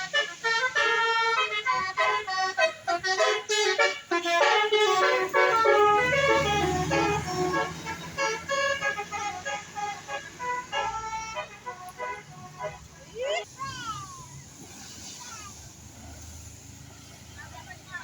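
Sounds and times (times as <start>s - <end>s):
musical air horn tune: 0.0s - 13.0s
bus engine rumbling: 0.0s - 18.0s.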